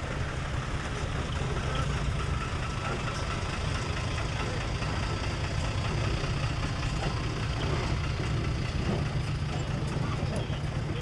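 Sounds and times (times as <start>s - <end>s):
diesel truck engine idling: 0.0s - 11.0s.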